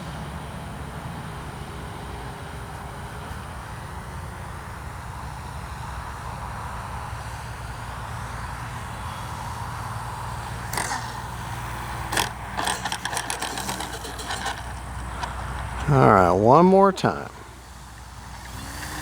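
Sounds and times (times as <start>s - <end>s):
steady low hum: 0.0s - 19.0s
rattling mechanical clicks: 10.4s - 16.3s.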